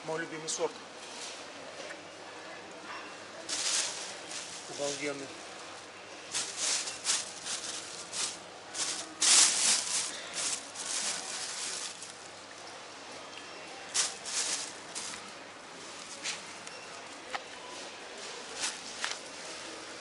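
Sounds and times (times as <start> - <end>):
bag rustling: 3.5 - 5.3, 6.3 - 12.3, 13.9 - 15.4.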